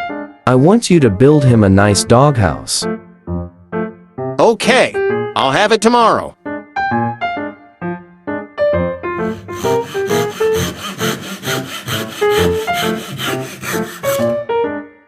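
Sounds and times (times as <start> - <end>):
light background music: 0.0 - 15.0
hand saw cutting wood: 9.2 - 14.4.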